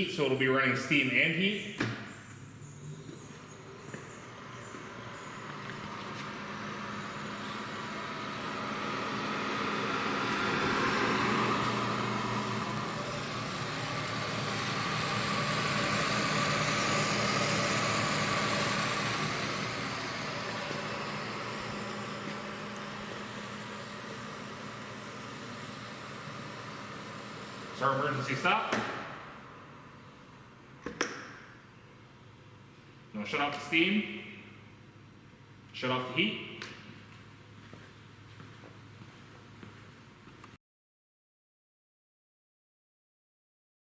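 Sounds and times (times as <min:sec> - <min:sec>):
humidifier blowing hiss: 0:03.6 - 0:30.6.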